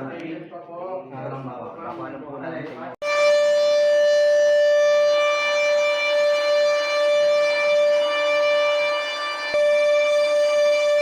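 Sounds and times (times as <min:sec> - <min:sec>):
air raid siren steady tone: 0:03.0 - 0:11.0.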